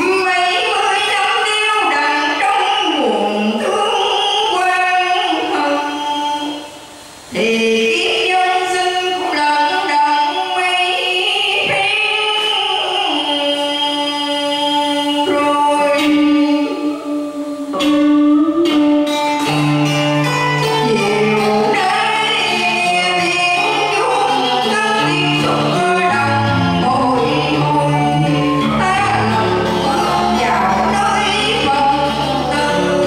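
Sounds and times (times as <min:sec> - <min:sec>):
person singing: 0:00.0 - 0:33.0
instrumental accompaniment: 0:12.9 - 0:33.0.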